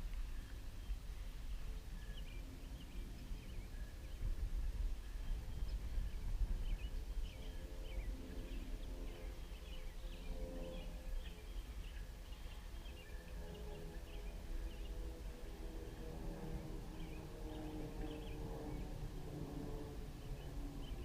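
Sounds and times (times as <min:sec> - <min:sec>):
small birds chirping: 0:00.0 - 0:19.2
wind rumble on microphone: 0:00.0 - 0:21.0.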